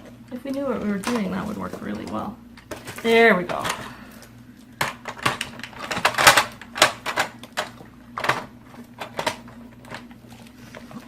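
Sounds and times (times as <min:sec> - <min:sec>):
plastic parts clacking together: 0:00.5 - 0:03.9, 0:04.8 - 0:10.1.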